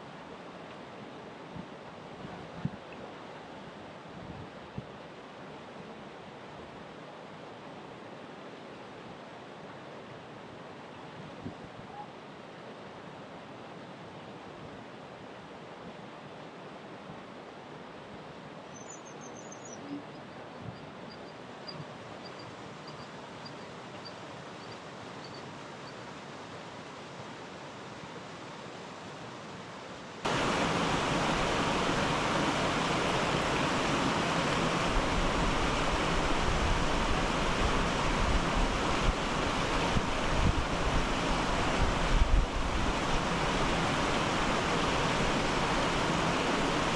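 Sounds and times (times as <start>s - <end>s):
rushing stream and waterfall: 0.0s - 18.8s, 20.2s - 46.9s.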